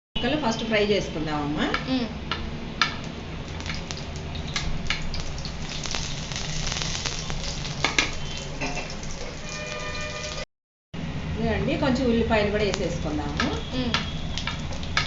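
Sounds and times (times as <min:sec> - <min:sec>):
stirring clicks: 0:02.3 - 0:05.6, 0:12.7 - 0:15.0
food frying in hot oil: 0:03.4 - 0:10.4, 0:12.4 - 0:15.0.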